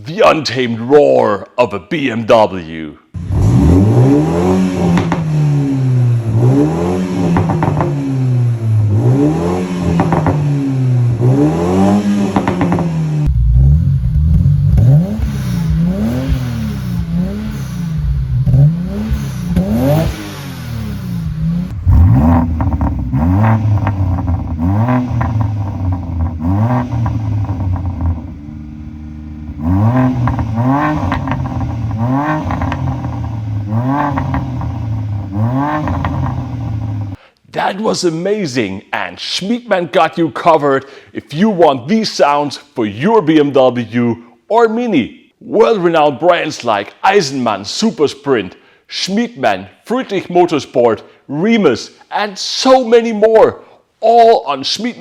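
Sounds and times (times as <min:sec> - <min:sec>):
car engines revving: 0:03.2 - 0:37.2.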